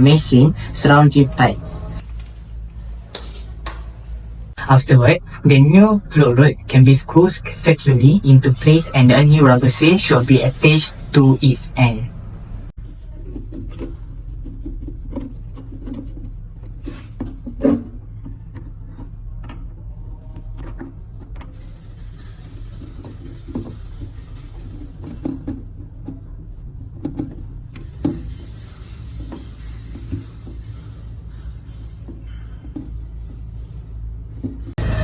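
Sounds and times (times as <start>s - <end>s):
steady low hum: 0.0s - 2.0s, 4.6s - 12.7s.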